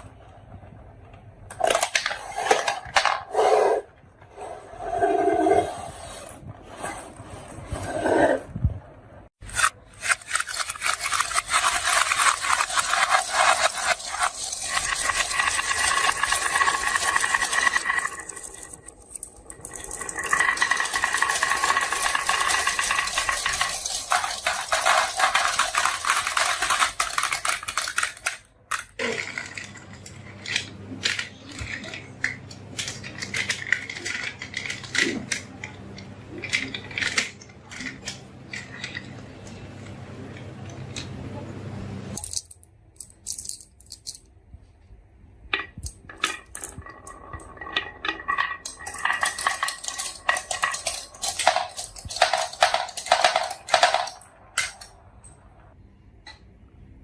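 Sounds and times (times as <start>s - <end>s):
marbles rattling down a track: 10.0s - 35.6s, 45.5s - 55.0s.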